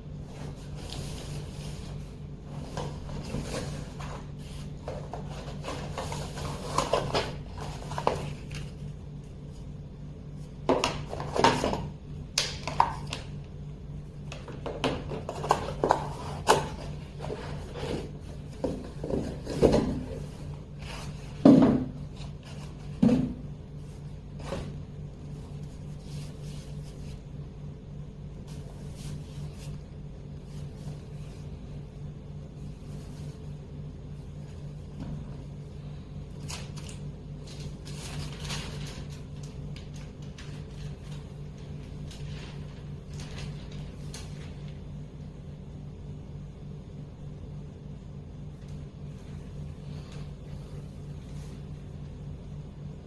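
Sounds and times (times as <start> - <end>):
steady low hum: 0.0 - 53.0
cardboard packaging handled: 0.3 - 8.9, 36.4 - 44.7.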